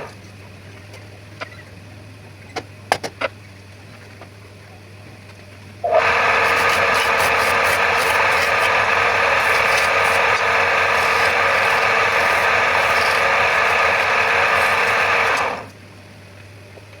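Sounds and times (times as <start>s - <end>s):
lathe motor hum: 5.9s - 15.7s
lathe tool scraping wood: 5.9s - 15.7s.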